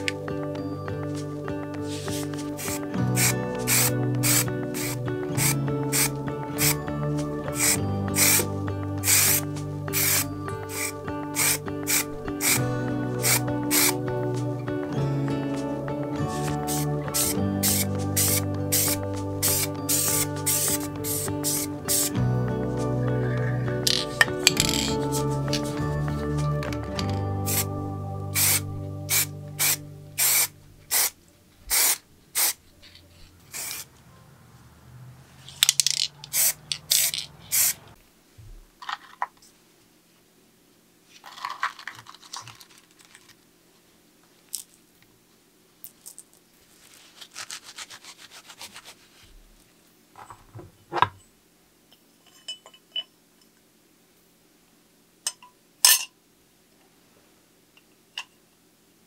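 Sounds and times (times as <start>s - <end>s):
short hissing spray bursts: 1.9s - 6.8s, 7.6s - 12.6s, 13.2s - 14.0s, 16.3s - 22.2s, 27.4s - 27.7s, 28.3s - 32.6s, 33.5s - 33.9s, 36.3s - 37.8s
rubbing and scraping: 46.7s - 49.4s.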